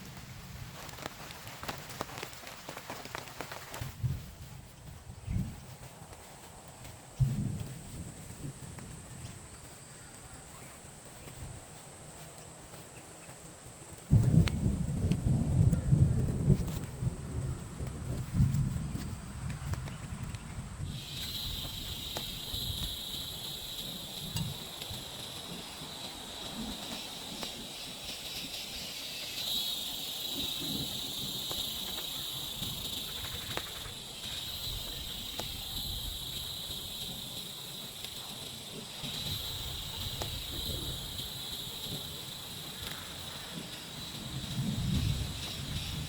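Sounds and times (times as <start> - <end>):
insects buzzing: 0.0 - 46.0.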